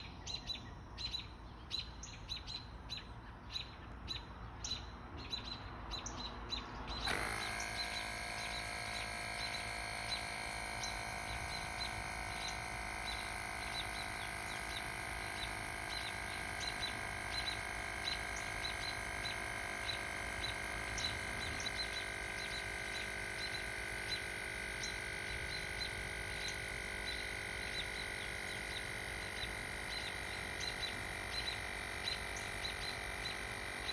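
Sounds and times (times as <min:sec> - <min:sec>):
air compressor running: 0:06.9 - 0:33.9.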